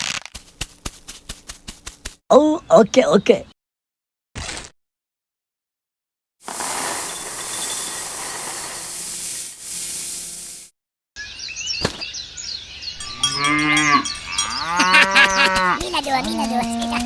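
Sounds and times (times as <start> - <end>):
steady hissing: 6.5 - 10.5
cow mooing: 13.1 - 15.8.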